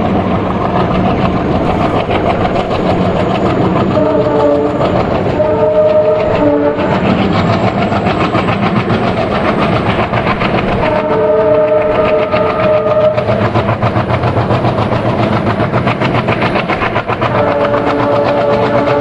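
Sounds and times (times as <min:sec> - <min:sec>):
train wheels clattering on rails: 0:00.0 - 0:19.0
locomotive horn blasts: 0:03.9 - 0:07.0, 0:10.9 - 0:13.2, 0:17.3 - 0:19.0.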